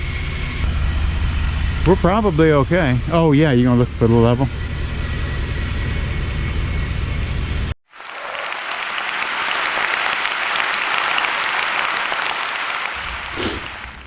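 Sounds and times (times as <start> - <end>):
truck engine rumbling: 0.0 - 7.8, 13.0 - 14.0
steady crackling hiss: 8.0 - 14.0.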